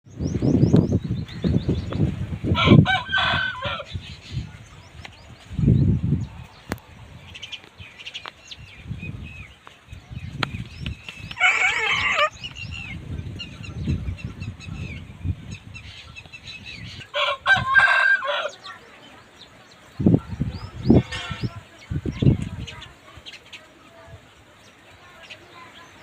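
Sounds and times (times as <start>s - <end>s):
small birds chirping: 0.0s - 2.5s, 3.3s - 26.0s
rooster crowing: 2.6s - 3.9s, 11.4s - 12.3s, 17.2s - 18.6s.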